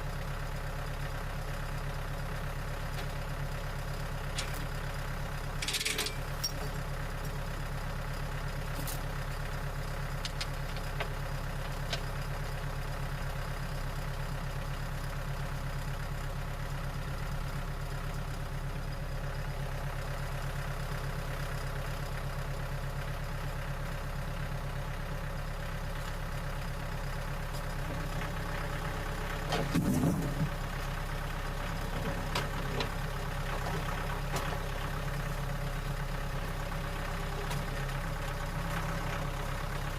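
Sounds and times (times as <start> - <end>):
engine idling: 0.0 - 39.9
clunk: 5.6 - 6.8, 29.5 - 30.6.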